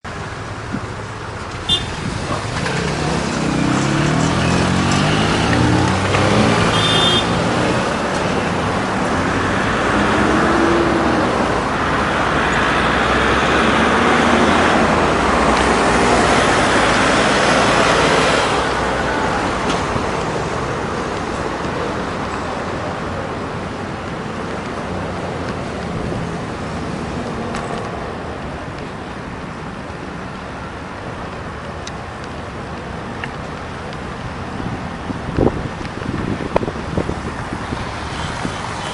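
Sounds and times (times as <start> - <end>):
city street traffic: 0.0 - 38.9
vehicle engine accelerating: 2.0 - 6.8.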